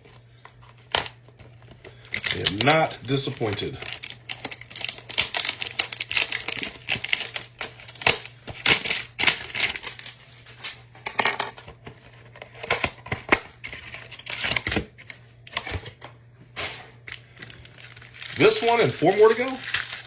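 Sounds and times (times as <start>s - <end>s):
cardboard and plastic wrap rustling: 0.0s - 20.0s
packaging clicks and snaps: 1.8s - 10.8s, 17.1s - 20.0s.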